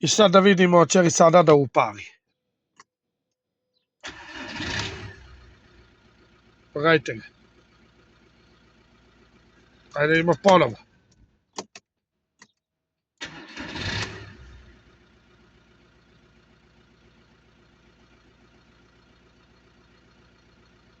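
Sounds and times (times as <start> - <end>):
diesel engine cranking and idling: 4.0 - 11.2, 13.2 - 21.0
clicks: 10.4 - 11.8.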